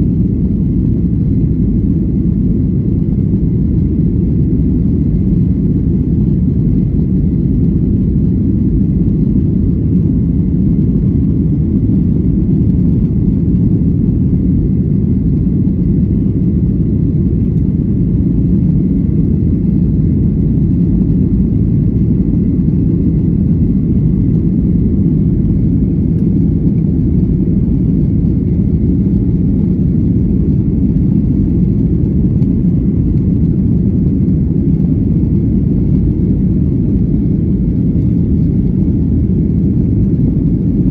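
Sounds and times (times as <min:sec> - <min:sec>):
jet engine and airflow rumble: 0:00.0 - 0:40.9.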